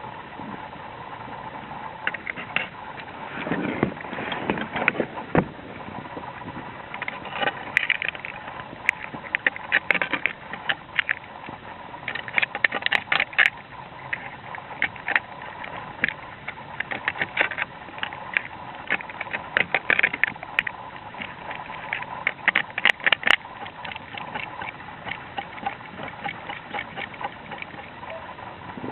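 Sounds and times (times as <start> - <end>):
hand tools on ceramic roof tiles: 7.0 - 28.3.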